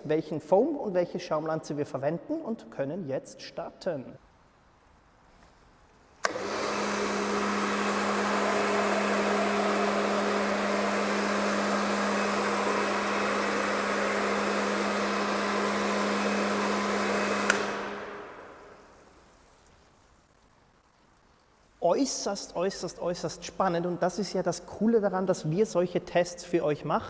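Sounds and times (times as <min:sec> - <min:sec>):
pressure washer motor humming: 0:06.2 - 0:19.0
water and foam spraying: 0:06.4 - 0:18.8
trigger click: 0:17.4 - 0:18.5.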